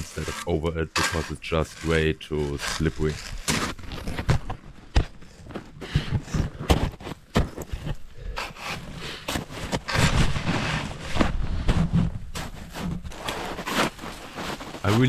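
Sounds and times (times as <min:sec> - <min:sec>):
footsteps crunching on icy snow: 0:00.0 - 0:15.0.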